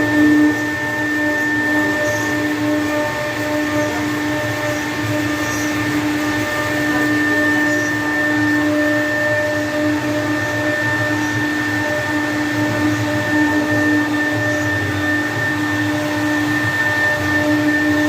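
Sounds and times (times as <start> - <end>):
router spindle whine: 0.0 - 18.0.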